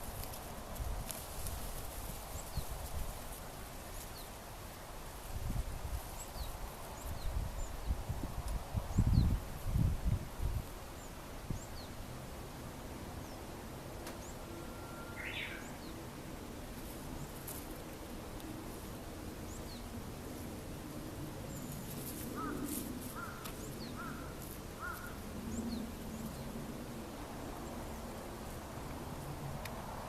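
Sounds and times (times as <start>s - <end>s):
steady background hiss: 0.0s - 30.0s
birds chirping: 14.2s - 16.0s, 21.4s - 26.6s.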